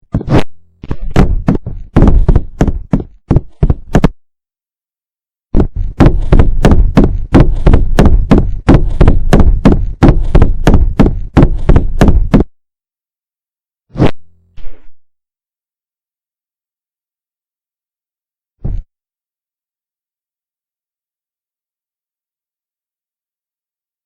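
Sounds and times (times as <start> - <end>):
loud knocks: 0.2 - 4.2, 5.6 - 12.5.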